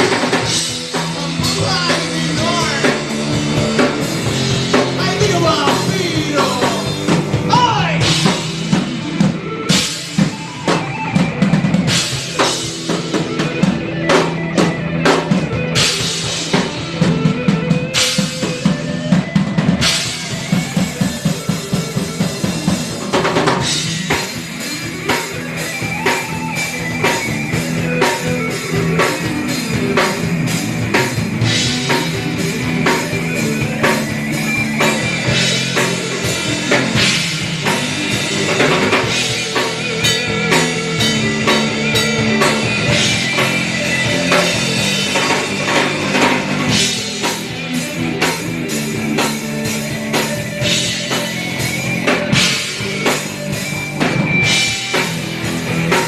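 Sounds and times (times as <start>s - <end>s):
rapid snare and bass drum hits: 0.0s - 9.0s
rock music: 0.0s - 56.0s.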